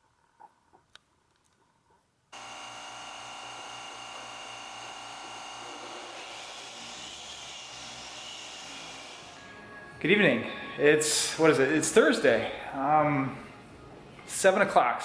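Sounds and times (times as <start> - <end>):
electric polisher humming: 2.4 - 9.4.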